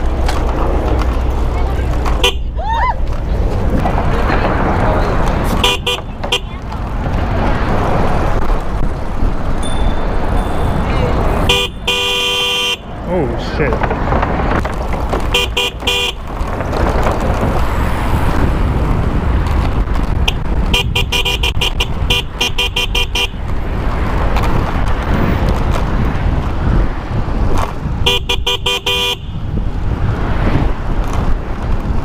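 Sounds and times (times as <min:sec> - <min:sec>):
traffic: 0:00.0 - 0:32.0
wind rumble: 0:00.0 - 0:32.0
bicycle horn honking: 0:02.2 - 0:02.6, 0:05.5 - 0:06.6, 0:09.7 - 0:12.9, 0:15.3 - 0:16.2, 0:20.2 - 0:23.4, 0:28.0 - 0:29.5.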